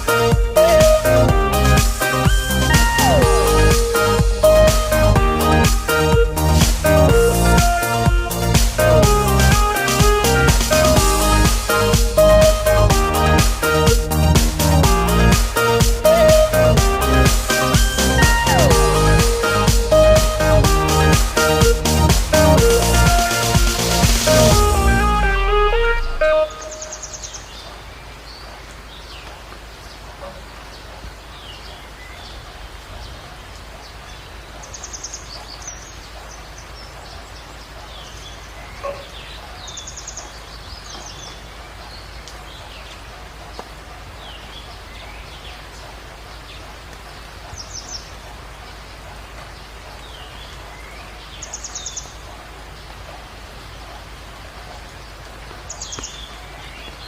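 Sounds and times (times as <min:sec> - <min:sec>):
high trilling bird call: 0:00.0 - 0:27.5
birds chirping: 0:00.0 - 0:57.0
rain pattering: 0:00.0 - 0:57.0.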